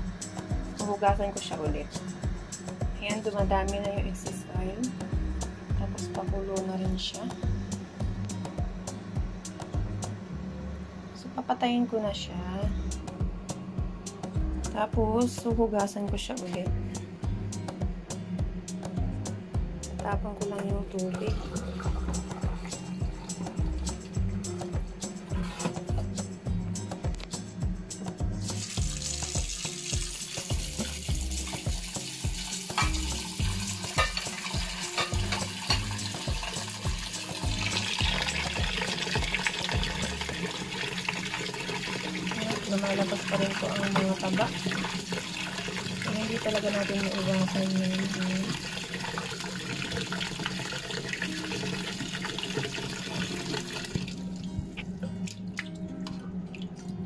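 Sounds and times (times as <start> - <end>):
steady low hum: 0.0 - 28.9
tap water running into pot: 21.2 - 23.6, 28.4 - 54.5
pot and bones clinking: 32.4 - 39.6.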